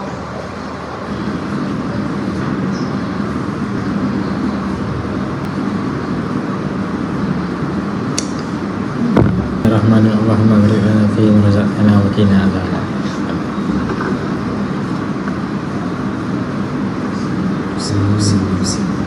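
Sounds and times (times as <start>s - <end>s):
low mechanical hum: 0.0s - 19.0s
sharp click: 8.2s - 8.5s.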